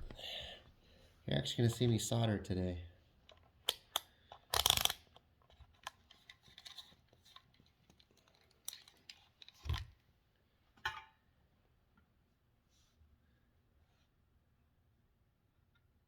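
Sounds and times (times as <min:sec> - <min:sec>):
tools clicking on workbench: 0:03.7 - 0:05.0.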